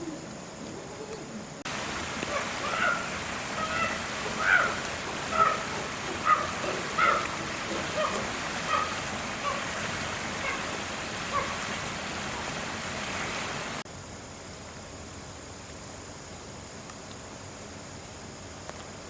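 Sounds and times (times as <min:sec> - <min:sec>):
background hiss: 0:00.0 - 0:19.0.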